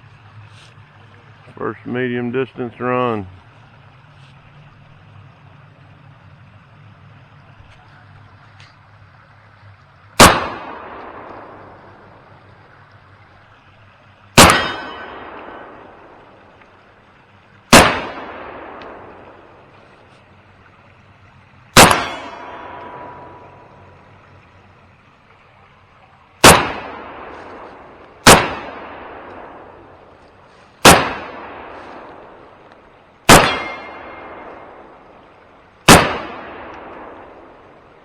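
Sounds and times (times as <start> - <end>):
gunshots with rolling echo: 10.2 - 12.3, 14.4 - 16.5, 17.7 - 19.6, 21.8 - 23.8, 26.4 - 30.1, 30.8 - 32.6, 33.3 - 35.2, 35.9 - 37.7.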